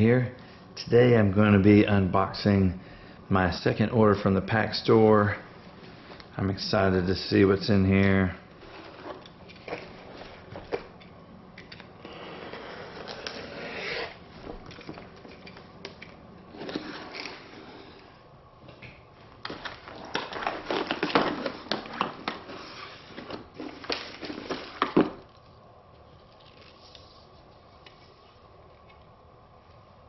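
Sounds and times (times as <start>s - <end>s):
packing material rustling and crinkling: 8.0s - 11.0s, 19.4s - 28.5s.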